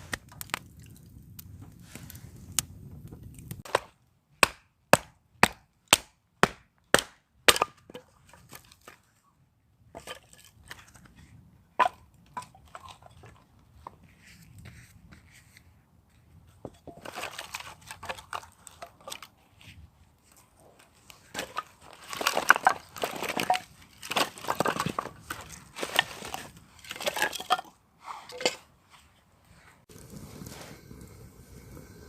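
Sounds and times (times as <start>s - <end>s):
crunching and crinkling: 16.8s - 27.6s.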